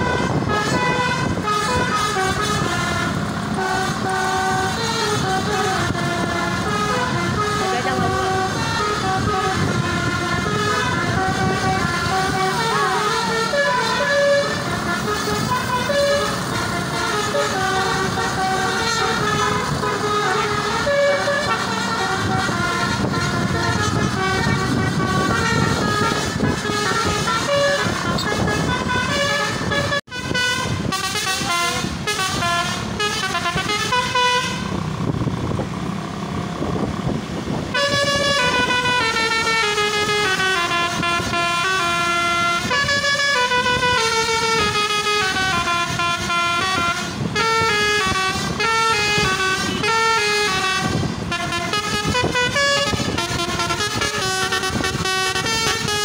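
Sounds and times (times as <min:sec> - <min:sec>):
musical bus horn playing a tune: 0:00.0 - 0:34.8, 0:37.6 - 0:56.0.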